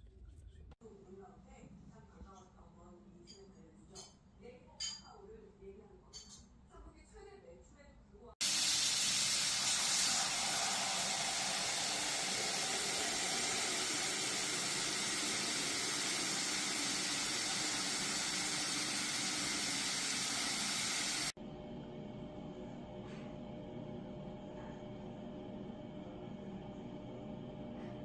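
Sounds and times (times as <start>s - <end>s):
spraying water hiss: 8.4s - 21.4s.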